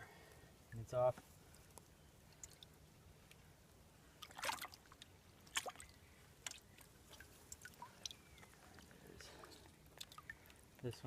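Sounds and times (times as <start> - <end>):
water splashing and dripping: 2.3 - 3.4, 4.2 - 10.8.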